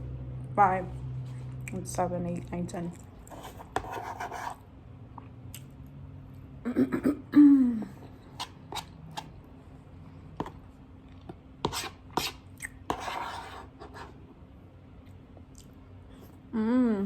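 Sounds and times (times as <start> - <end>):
mouth clicks and chewing: 12.6 - 12.8.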